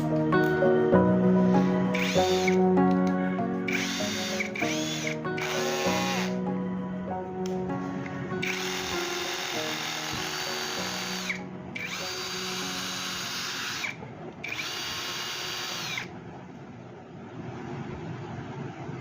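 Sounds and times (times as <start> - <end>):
background music: 0.0 - 16.1
cordless drill motor whine: 1.9 - 2.6, 3.7 - 6.4, 8.4 - 16.1.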